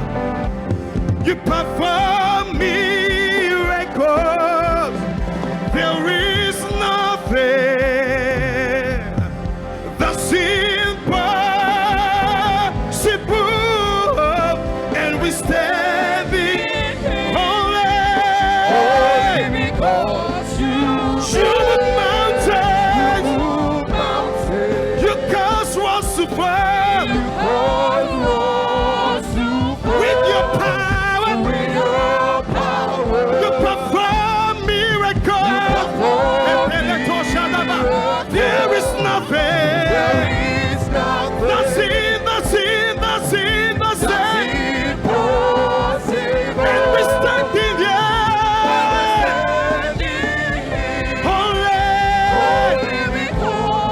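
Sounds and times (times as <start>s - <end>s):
sustained instrumental backing: 0.0s - 53.9s
person singing with vibrato: 1.2s - 53.9s.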